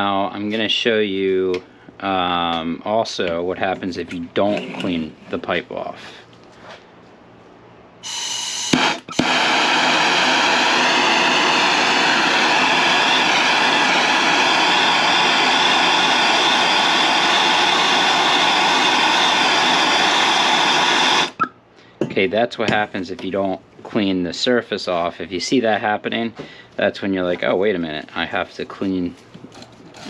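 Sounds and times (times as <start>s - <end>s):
gas torch flame roaring: 8.0s - 21.4s
gas hissing: 8.0s - 21.5s
torch igniter clicks: 8.7s - 21.5s.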